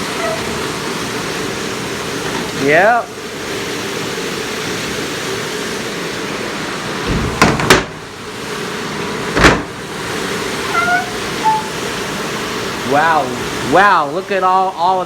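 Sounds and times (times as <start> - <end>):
dish machine spraying water: 0.0 - 15.0
loud clunks: 6.9 - 12.0.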